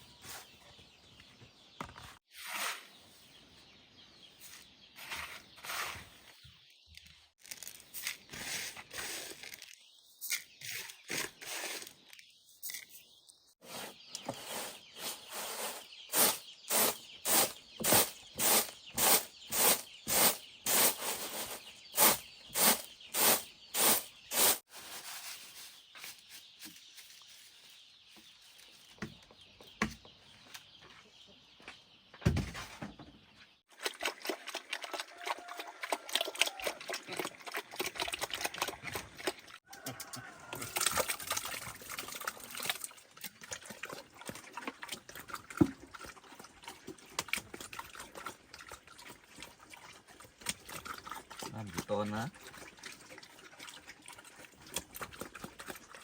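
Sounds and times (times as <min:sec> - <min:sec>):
rustling and scraping: 0:01.8 - 0:03.5, 0:04.3 - 0:13.0, 0:13.6 - 0:29.5.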